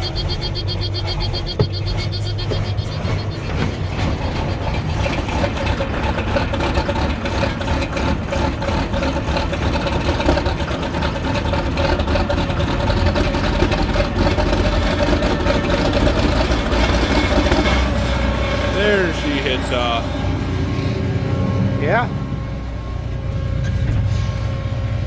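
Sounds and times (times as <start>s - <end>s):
steady whine: 0.0s - 8.6s, 16.6s - 25.0s
diesel engine cranking: 0.0s - 25.0s.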